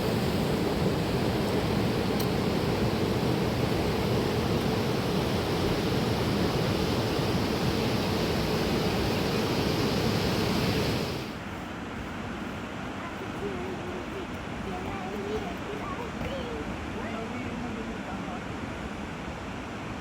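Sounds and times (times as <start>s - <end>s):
water rushing: 0.0s - 11.4s.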